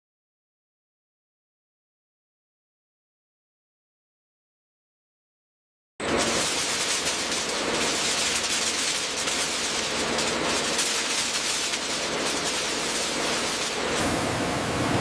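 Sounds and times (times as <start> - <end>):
loud hissing with crackle: 6.1 - 15.0.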